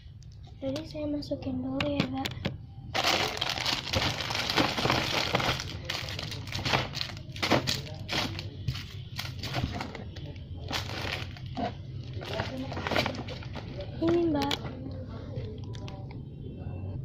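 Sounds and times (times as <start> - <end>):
packaging rustling and crinkling: 3.0 - 14.2.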